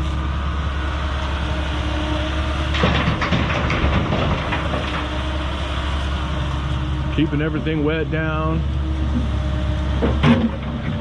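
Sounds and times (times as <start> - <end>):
diesel engines running: 0.0 - 11.0
rock rubble clattering into truck: 2.8 - 5.0.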